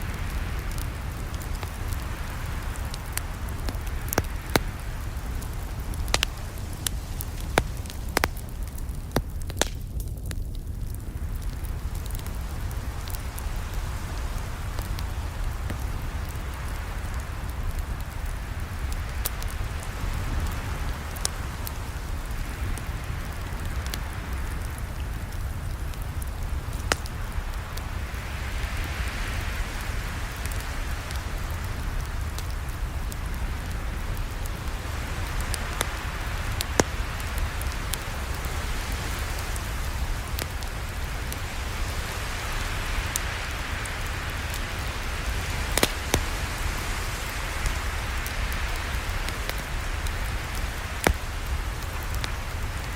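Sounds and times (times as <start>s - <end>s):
fire crackling and popping: 0.0s - 52.9s
low rumble of flames: 0.0s - 52.9s.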